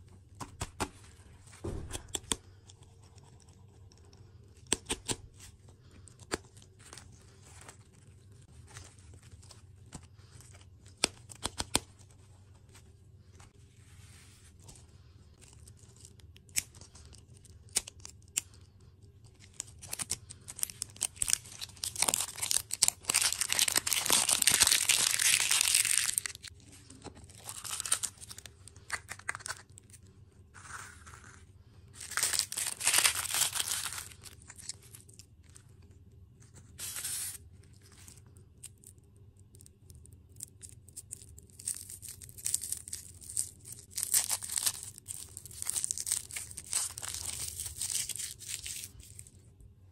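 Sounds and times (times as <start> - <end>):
wrappers crinkled and torn open: 15.3 - 36.0, 36.7 - 49.4.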